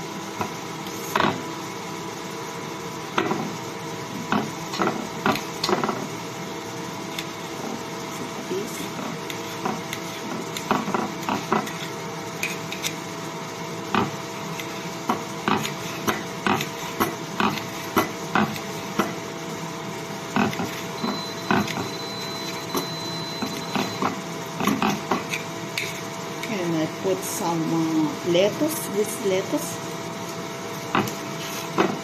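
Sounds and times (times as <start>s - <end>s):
steady background hum: 0.0s - 32.0s
knife chopping on cutting board: 15.1s - 19.2s.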